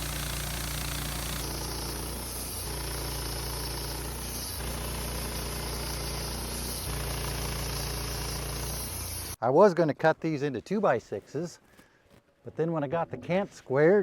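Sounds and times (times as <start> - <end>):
sawmill engine running: 0.0 - 9.4.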